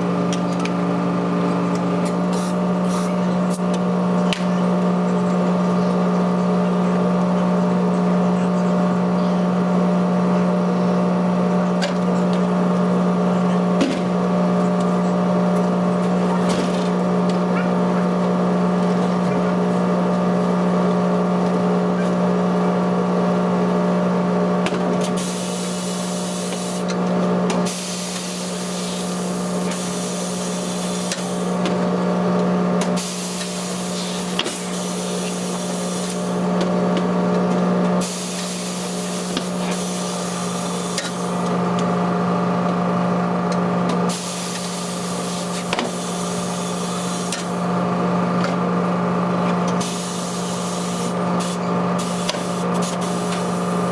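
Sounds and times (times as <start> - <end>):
machinery motor hum: 0.0 - 53.9
compressed air hissing: 25.2 - 26.9, 27.7 - 31.5, 33.0 - 36.4, 38.0 - 41.4, 44.1 - 47.6, 49.8 - 53.9.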